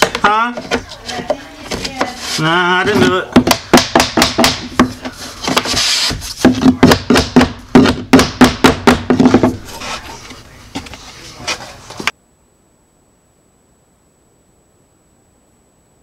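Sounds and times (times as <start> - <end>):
sharp knocks on wood: 3.0 - 5.8, 6.4 - 9.6.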